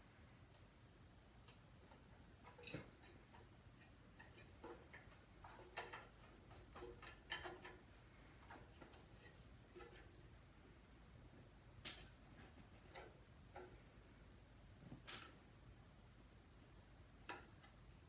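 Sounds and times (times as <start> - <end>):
small tools clicking and tapping: 1.5 - 10.3, 17.2 - 17.8.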